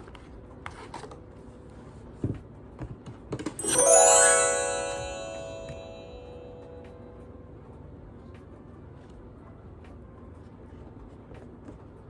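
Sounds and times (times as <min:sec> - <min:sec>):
bell-like musical tone: 0:03.6 - 0:07.3.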